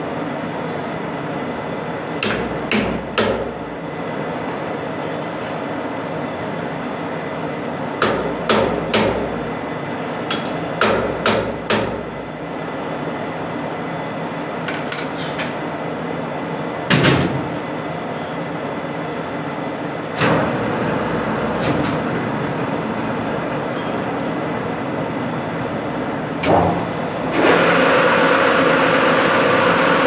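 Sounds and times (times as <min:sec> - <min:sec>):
workshop machine noise: 0:00.0 - 0:30.0
hammer striking metal: 0:14.7 - 0:15.2.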